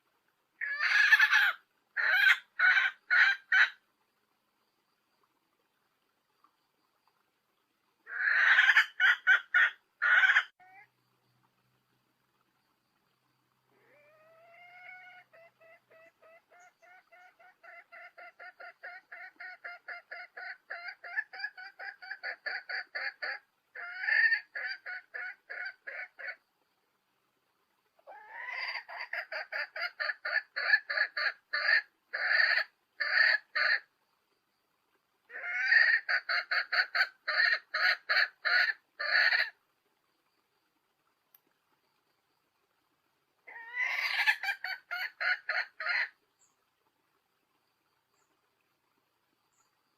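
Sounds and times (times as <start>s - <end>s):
hen clucking: 0.6s - 3.8s, 8.1s - 10.9s, 13.8s - 26.4s, 28.0s - 33.9s, 35.3s - 39.6s, 43.5s - 46.2s.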